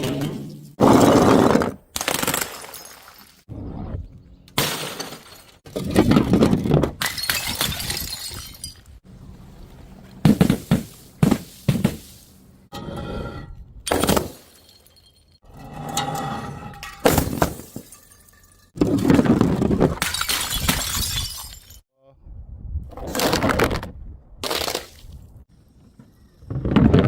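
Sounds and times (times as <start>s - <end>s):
glass bottles smashing: 4.6s - 6.4s, 7.0s - 8.9s, 13.9s - 15.4s, 16.7s - 18.8s, 20.0s - 21.8s.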